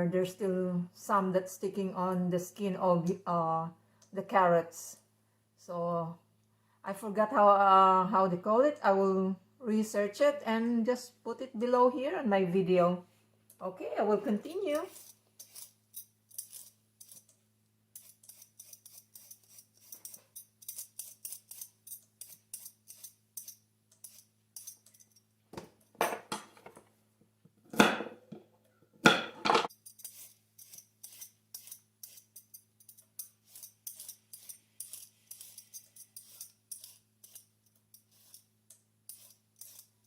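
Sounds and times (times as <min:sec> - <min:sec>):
peeler scraping carrots: 0:14.2 - 0:25.0, 0:29.7 - 0:38.5, 0:39.1 - 0:40.0.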